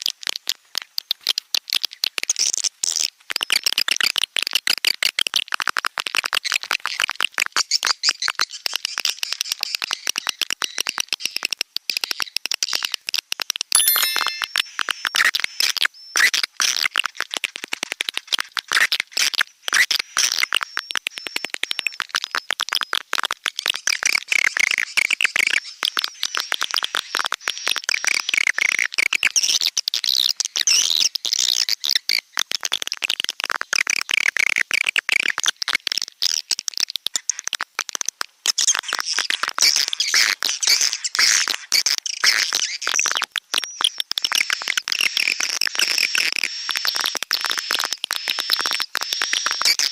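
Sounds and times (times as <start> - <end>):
swiftlet chirps and twitters: 13.8 - 14.6.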